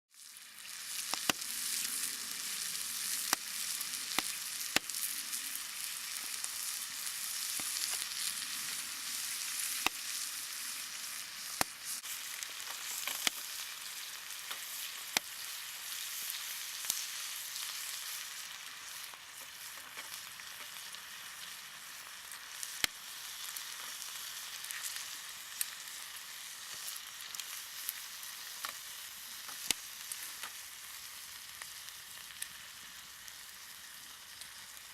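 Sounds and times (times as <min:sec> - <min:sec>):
food sizzling over fire: 0:00.1 - 0:34.9
campfire popping: 0:00.2 - 0:23.8.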